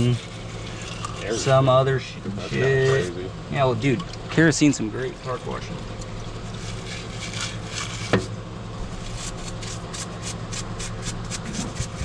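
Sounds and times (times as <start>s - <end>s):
steady low hum: 0.0s - 12.0s
brush scrubbing metal: 6.6s - 8.2s, 8.9s - 12.0s.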